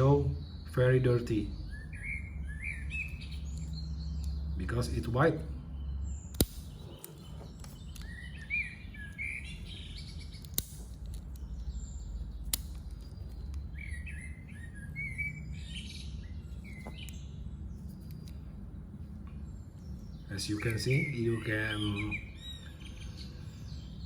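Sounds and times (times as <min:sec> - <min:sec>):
low steady hum: 0:00.0 - 0:24.0
small birds chirping: 0:00.0 - 0:24.0
sharp clicks: 0:06.3 - 0:09.4, 0:10.3 - 0:14.0.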